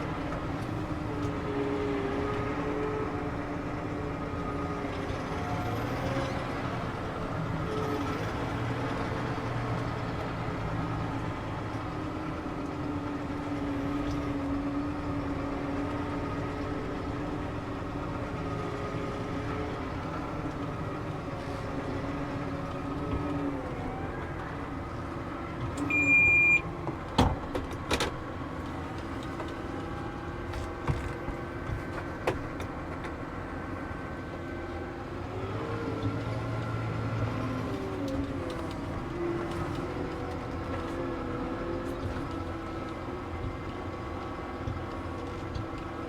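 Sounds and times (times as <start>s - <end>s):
tractor engine running: 0.0s - 46.0s
short electronic beep: 25.9s - 26.6s.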